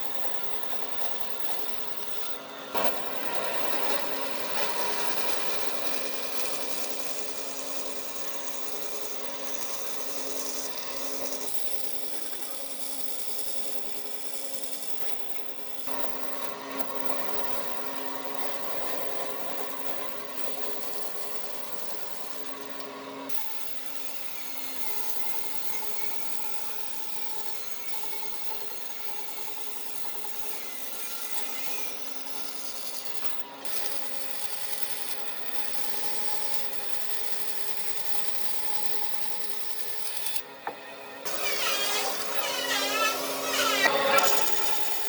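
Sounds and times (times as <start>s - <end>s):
motor hum: 41.3s - 45.0s
power tool rasping wood: 41.3s - 45.0s.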